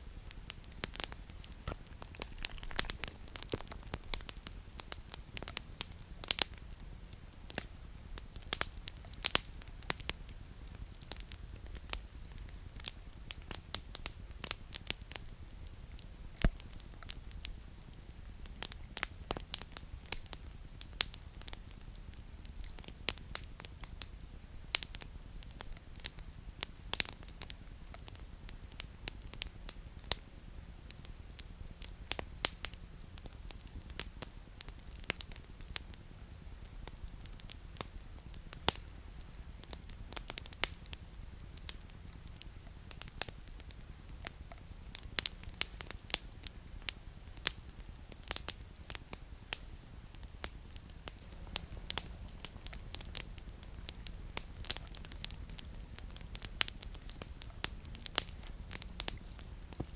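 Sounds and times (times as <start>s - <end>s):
campfire crackling and popping: 0.0s - 59.9s
low steady background noise: 0.0s - 59.9s.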